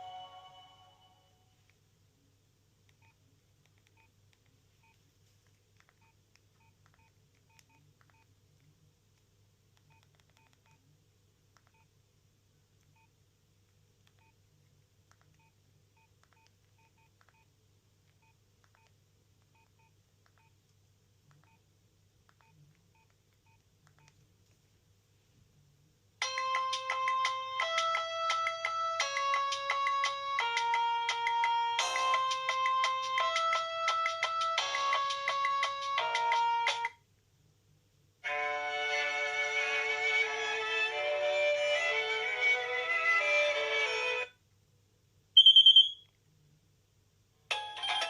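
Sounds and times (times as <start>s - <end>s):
phone keypad beeps: 45.4s - 46.1s.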